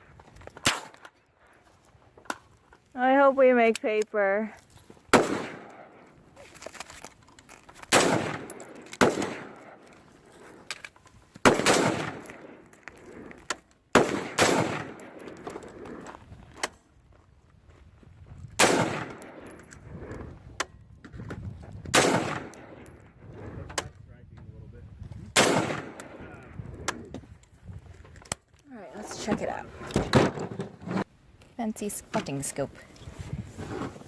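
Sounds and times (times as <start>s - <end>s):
fainter distant gunshots: 5.1s - 6.0s, 7.9s - 9.8s, 11.4s - 12.6s, 14.0s - 15.4s, 25.4s - 26.4s
rifle shots: 5.1s - 6.0s, 7.9s - 9.8s, 11.4s - 12.7s, 13.9s - 15.6s, 18.6s - 19.6s, 21.9s - 23.0s, 25.4s - 26.3s.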